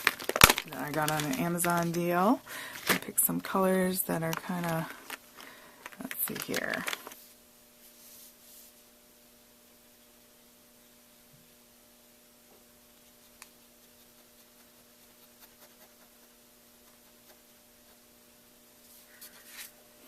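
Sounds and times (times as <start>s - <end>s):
steady electrical hum: 0.0s - 20.0s
gel pen scratching on paper: 13.8s - 18.1s.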